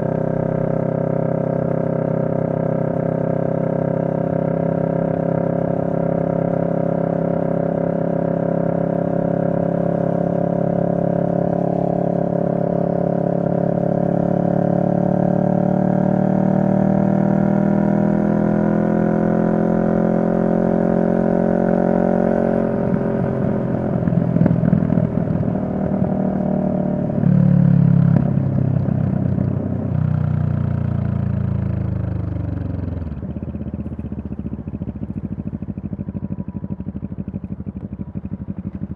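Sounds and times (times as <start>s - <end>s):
motorcycle engine while riding: 0.0s - 38.9s.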